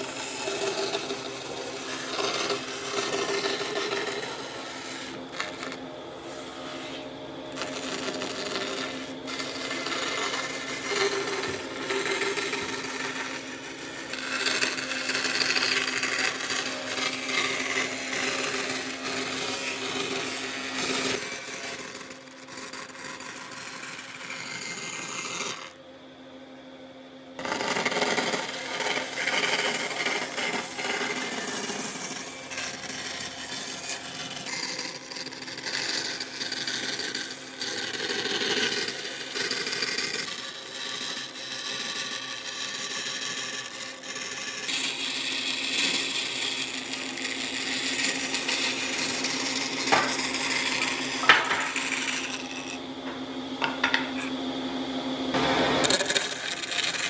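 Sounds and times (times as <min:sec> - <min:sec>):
hand tools scraping wood: 0:00.0 - 0:21.6, 0:43.4 - 0:54.4.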